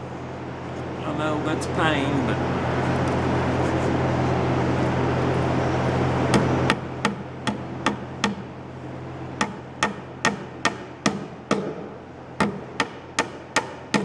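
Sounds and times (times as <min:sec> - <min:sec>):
hoist motor humming: 0:00.0 - 0:14.0
sharp knocks: 0:06.3 - 0:08.5, 0:09.4 - 0:14.0.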